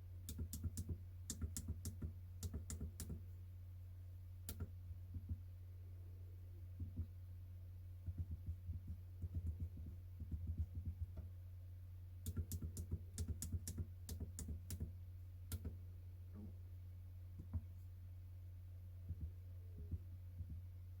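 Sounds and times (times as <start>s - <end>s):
calculator keys pressed: 0.3s - 3.2s, 12.2s - 14.9s.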